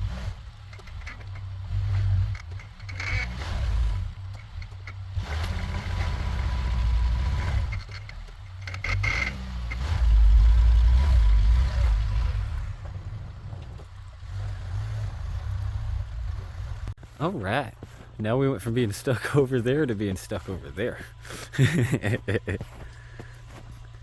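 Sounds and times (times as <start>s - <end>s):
truck engine revving: 0.0s - 17.6s, 18.6s - 24.0s
tires slipping on snow: 0.0s - 24.0s.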